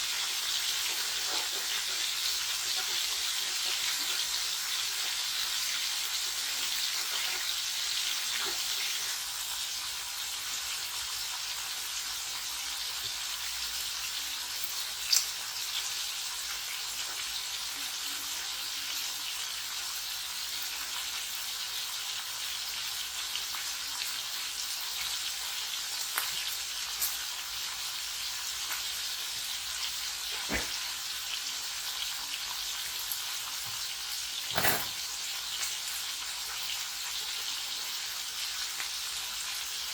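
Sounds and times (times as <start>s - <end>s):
food sizzling in hot oil: 0.0s - 39.9s.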